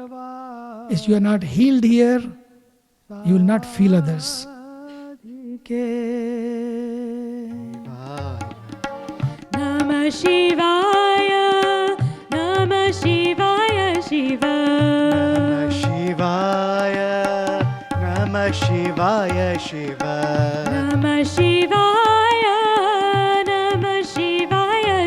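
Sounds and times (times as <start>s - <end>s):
devotional singing: 0.0s - 2.4s, 3.1s - 25.0s
tabla beats: 7.3s - 25.0s.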